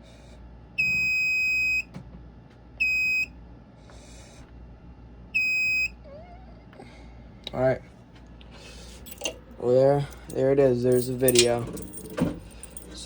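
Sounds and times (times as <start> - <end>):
fire alarm beeping: 0.8 - 1.9, 2.8 - 3.3, 5.4 - 6.0.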